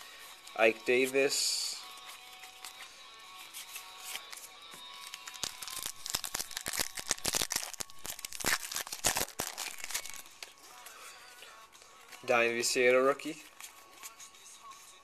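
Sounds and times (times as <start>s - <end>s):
foil wrapper crinkling and tearing: 3.8s - 10.5s.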